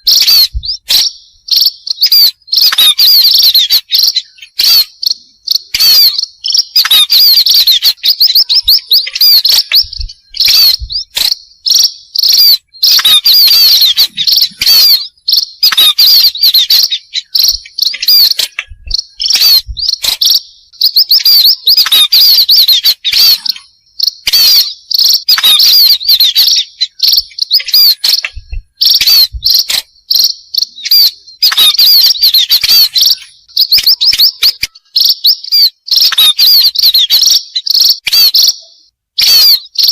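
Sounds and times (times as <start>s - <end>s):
small birds chirping chorus: 0.0s - 39.9s.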